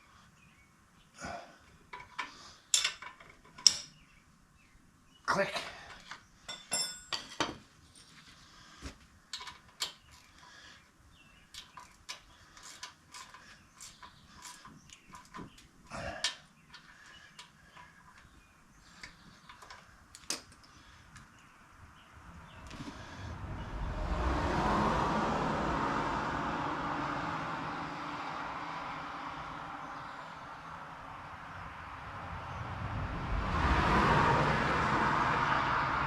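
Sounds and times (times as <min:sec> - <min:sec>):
metal tools clinking and knocking: 0:01.9 - 0:04.0, 0:05.9 - 0:08.1, 0:09.3 - 0:10.2, 0:11.5 - 0:18.2.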